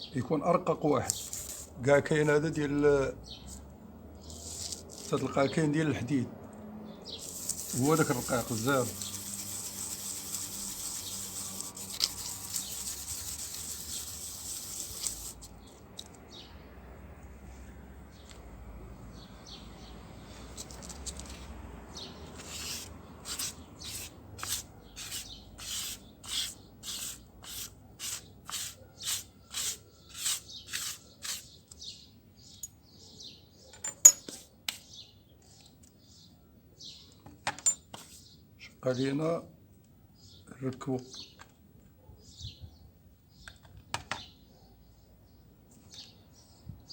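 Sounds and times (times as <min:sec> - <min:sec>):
blade scraping on abrasive paper: 0:01.1 - 0:01.8, 0:04.2 - 0:05.3, 0:07.1 - 0:15.5, 0:22.2 - 0:31.5.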